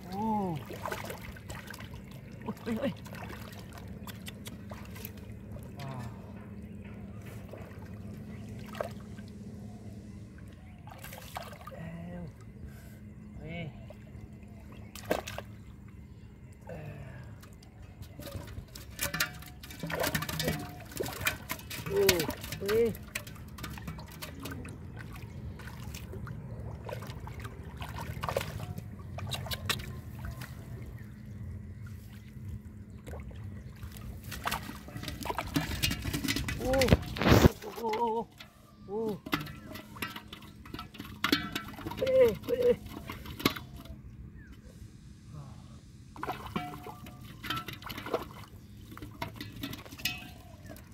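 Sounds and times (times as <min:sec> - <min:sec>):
muddy water sloshing: 0:00.0 - 0:44.7, 0:46.1 - 0:50.9
low hum: 0:00.0 - 0:50.9
water splash: 0:00.5 - 0:05.2, 0:19.0 - 0:30.6, 0:33.0 - 0:38.2, 0:46.2 - 0:48.5.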